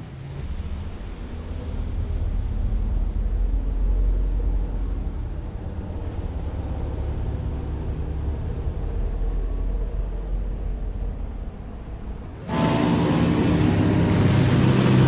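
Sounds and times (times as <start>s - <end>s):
outboard motors running: 12.4s - 15.0s.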